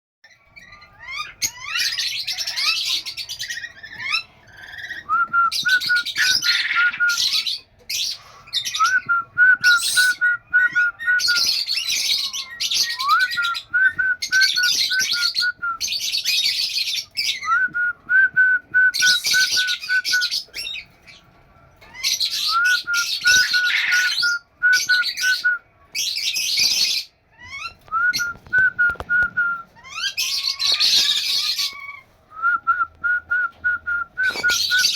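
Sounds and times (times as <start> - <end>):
parrot whistled notes: 3.7 - 7.5, 22.2 - 25.6, 33.8 - 34.9
parrot harsh screeches: 29.8 - 32.0.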